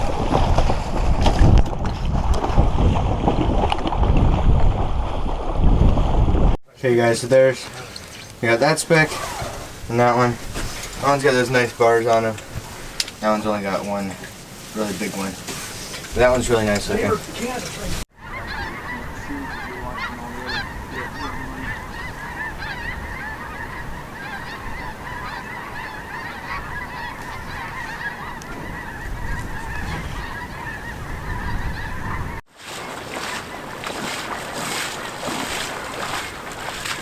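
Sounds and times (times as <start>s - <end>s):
flock of geese honking: 8.6s - 32.4s.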